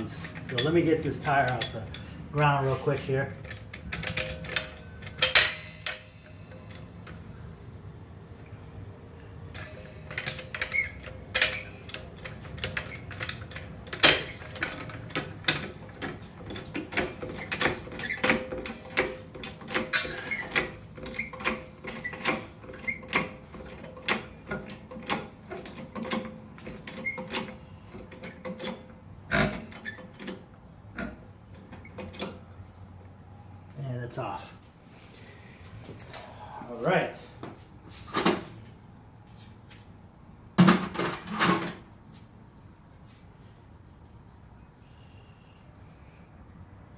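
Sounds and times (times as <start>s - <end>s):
car jack clicking and knocking: 9.6s - 32.4s.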